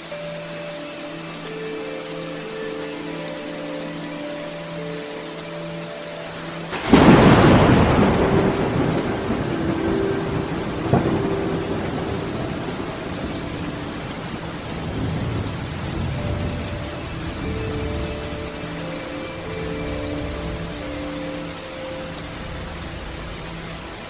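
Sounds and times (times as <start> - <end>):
steady rain: 0.0 - 24.0
thunderclap rumbling: 6.7 - 18.6.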